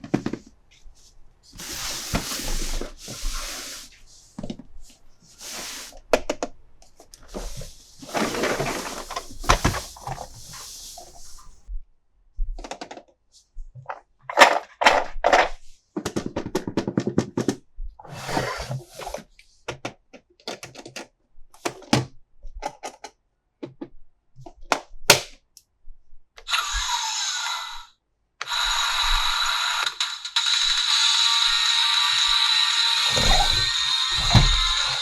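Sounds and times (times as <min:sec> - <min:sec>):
plastic toys clicking and rattling: 0:07.1 - 0:11.0.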